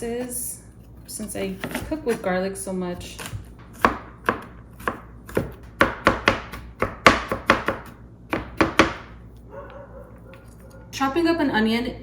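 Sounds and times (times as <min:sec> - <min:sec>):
knife chopping on cutting board: 0:03.0 - 0:09.2.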